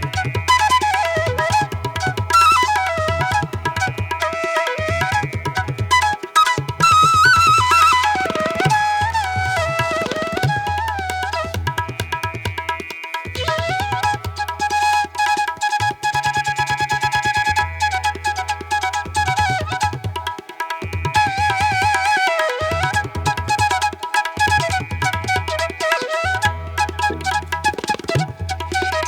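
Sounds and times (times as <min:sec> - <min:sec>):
fast hand-drum beats: 0:00.0 - 0:16.1, 0:19.0 - 0:22.1, 0:26.8 - 0:29.0
wavering melody: 0:00.0 - 0:16.2, 0:21.0 - 0:29.0.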